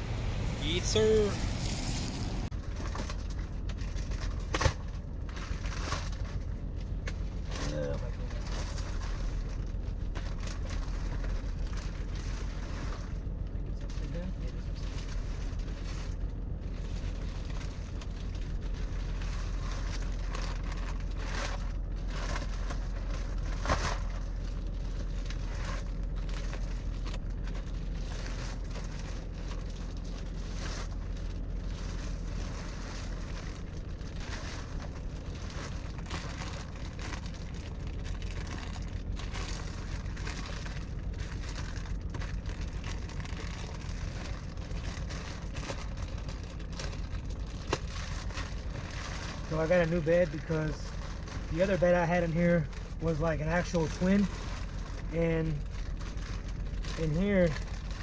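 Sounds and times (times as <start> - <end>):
truck engine idling: 0.0 - 58.0
plastic wrapping crinkling: 14.7 - 58.0.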